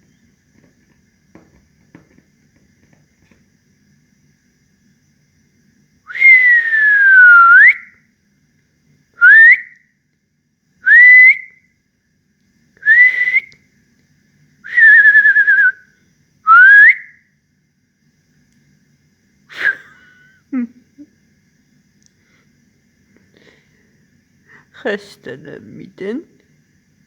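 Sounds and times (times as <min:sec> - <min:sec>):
person whistling: 0:06.1 - 0:07.9, 0:09.2 - 0:09.7, 0:10.9 - 0:11.5, 0:12.9 - 0:13.5, 0:14.7 - 0:15.8, 0:16.5 - 0:17.1.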